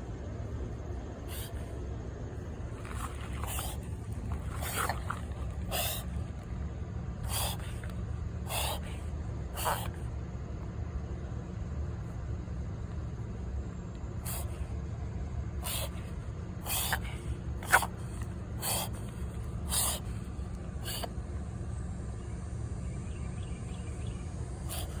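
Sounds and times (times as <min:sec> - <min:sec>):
pet coughing: 0:01.2 - 0:01.7, 0:02.8 - 0:06.4, 0:07.2 - 0:10.0, 0:14.2 - 0:14.6, 0:15.6 - 0:21.2, 0:24.7 - 0:25.0.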